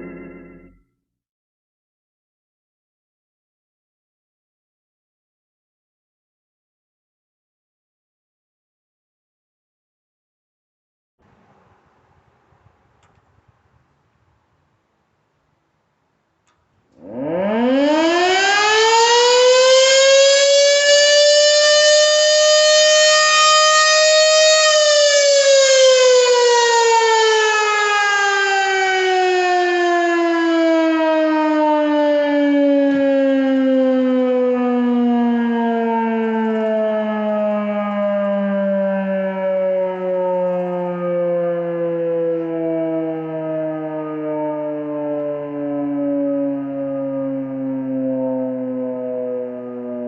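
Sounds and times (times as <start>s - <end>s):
fire siren wailing: 0.0s - 0.7s, 17.0s - 50.0s.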